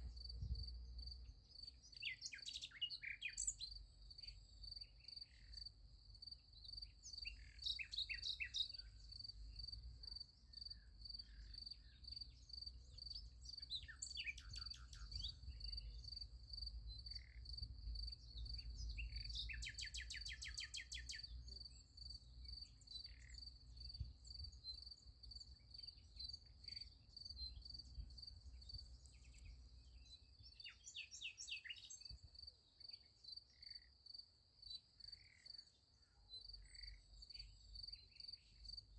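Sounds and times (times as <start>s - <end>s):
faint low rumble: 0.0s - 1.6s
songbirds calling: 0.0s - 34.0s, 34.6s - 38.9s
crickets chirping: 0.1s - 38.9s.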